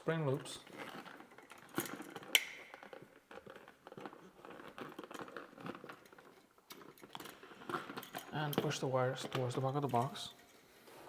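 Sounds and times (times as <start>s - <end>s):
copper wire clicks and rustles: 0.2s - 10.6s.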